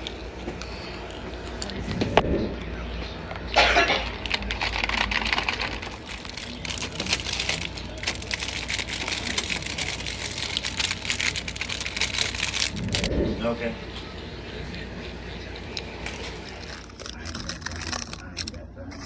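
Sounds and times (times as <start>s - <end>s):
plastic snack packets crackling: 3.8s - 13.1s, 16.4s - 19.0s.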